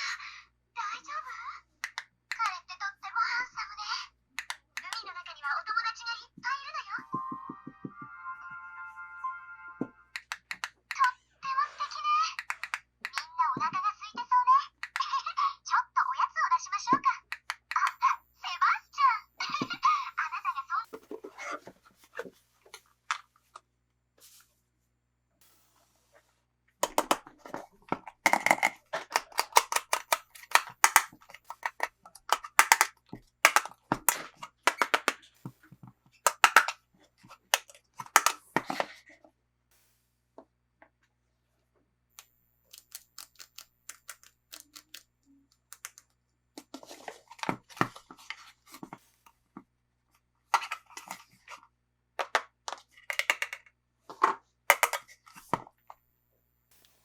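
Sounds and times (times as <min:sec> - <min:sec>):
toy packaging crinkling: 0:26.8 - 0:35.4, 0:36.2 - 0:36.8, 0:37.4 - 0:39.1, 0:52.8 - 0:53.7, 0:54.7 - 0:55.2.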